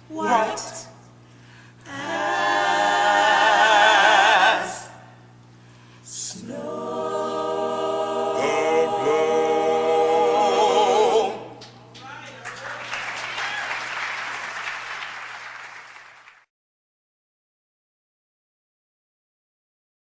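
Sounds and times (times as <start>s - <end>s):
choir singing chords: 0.0s - 1.1s, 1.8s - 5.2s, 6.1s - 11.9s.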